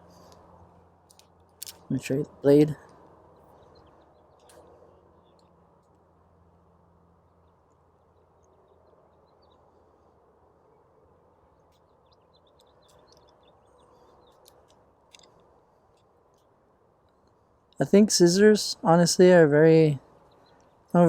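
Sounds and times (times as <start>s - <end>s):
faint clicks: 11.6s - 17.8s.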